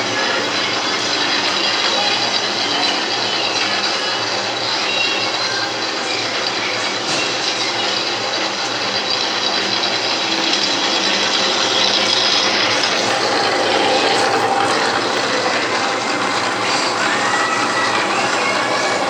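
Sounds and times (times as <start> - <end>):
milling machine whirring: 0.0 - 19.0
faint steady whine: 9.6 - 19.0.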